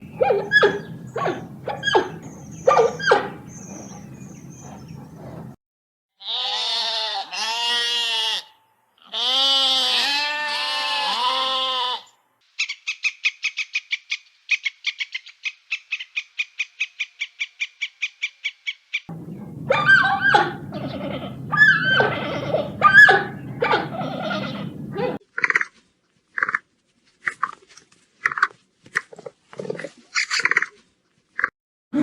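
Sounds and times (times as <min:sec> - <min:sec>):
low hum: 0:00.0 - 0:05.6, 0:19.1 - 0:25.2
short squeaky animal calls: 0:00.2 - 0:04.8, 0:19.7 - 0:25.6
goat bleating: 0:06.2 - 0:12.1, 0:19.4 - 0:25.2.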